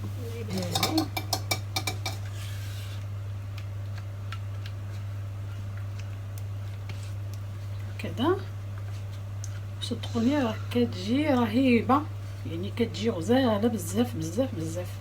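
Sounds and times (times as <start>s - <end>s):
steady low hum: 0.0s - 15.0s
utensil clicking against a dish: 0.6s - 2.3s.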